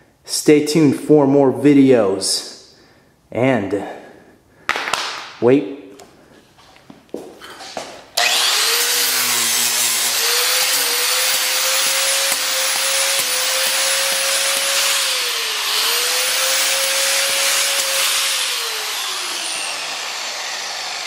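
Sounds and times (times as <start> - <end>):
angle grinder running: 8.2 - 21.0.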